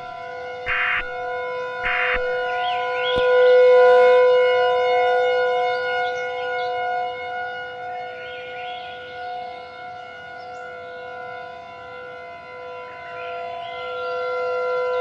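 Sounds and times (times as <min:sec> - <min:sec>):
held electronic tones chord: 0:00.0 - 0:03.2
screeching data bursts: 0:00.7 - 0:01.1, 0:01.9 - 0:02.3.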